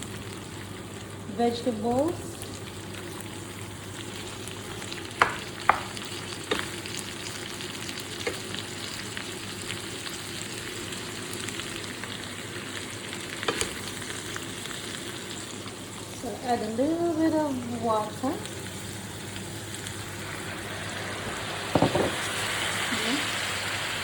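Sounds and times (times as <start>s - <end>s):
vegetables sizzling in a pan: 0.0s - 24.0s
utensil knocking against pan: 5.2s - 5.9s.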